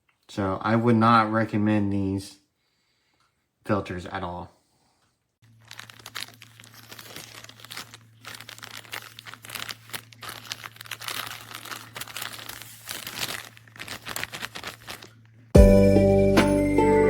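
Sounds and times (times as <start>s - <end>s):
plastic packaging crinkling: 5.4s - 15.5s.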